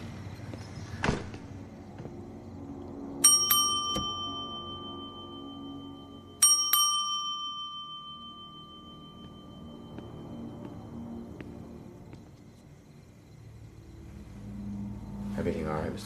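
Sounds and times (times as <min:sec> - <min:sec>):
service bell dinging: 0:03.2 - 0:10.3.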